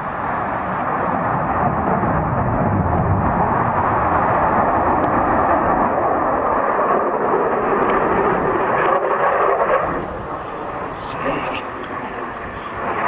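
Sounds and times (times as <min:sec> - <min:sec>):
aircraft engine noise: 0:00.0 - 0:13.0.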